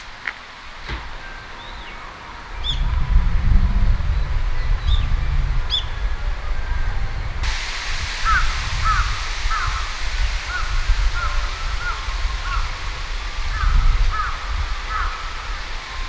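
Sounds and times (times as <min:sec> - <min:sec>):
steady low rumble: 0:07.4 - 0:16.0
coots calling: 0:07.5 - 0:15.9.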